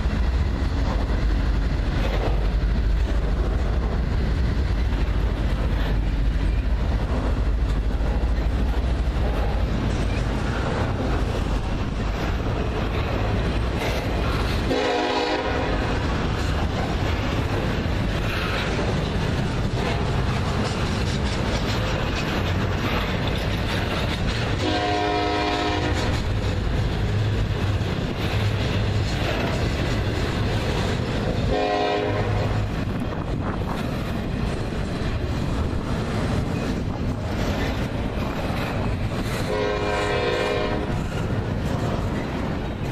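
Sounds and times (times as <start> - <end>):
freight cars rumbling on rails: 0.0 - 42.9
locomotive air horn blasts: 14.7 - 15.9, 24.6 - 26.2, 31.5 - 32.6, 39.5 - 40.9.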